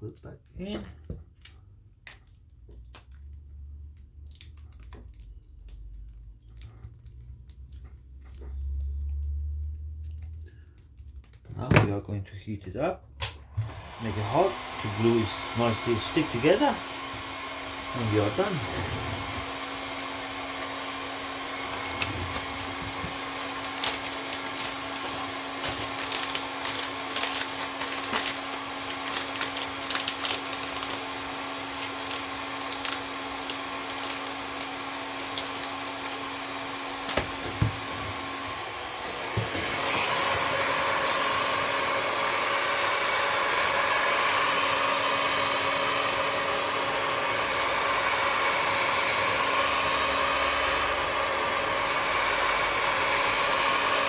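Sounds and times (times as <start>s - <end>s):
heat gun blowing: 13.2s - 54.0s.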